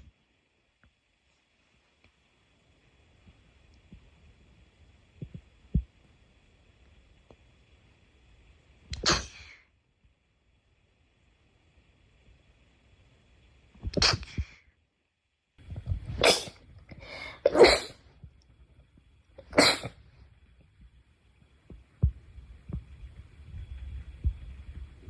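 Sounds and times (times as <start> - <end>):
soft low thumps: 5.2 - 6.0, 15.6 - 16.2, 20.6 - 25.0
person sneezing: 9.0 - 9.6, 14.0 - 14.5, 16.1 - 18.0, 19.4 - 20.0.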